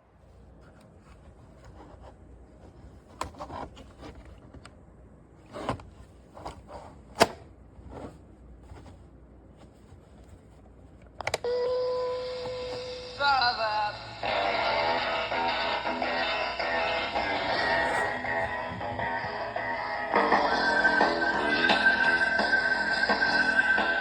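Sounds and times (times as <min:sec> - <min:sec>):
music from cassette player: 0:11.4 - 0:24.0.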